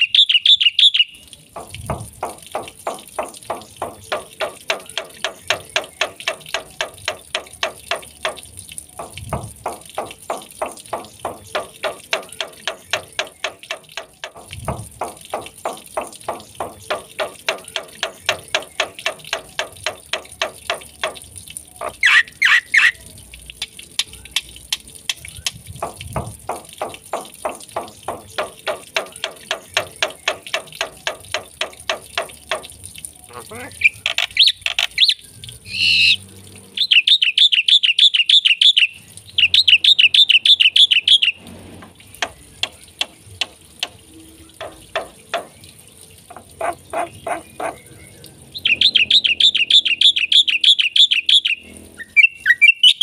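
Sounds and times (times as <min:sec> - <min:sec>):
starling chattering calls: 0:35.7 - 0:36.2.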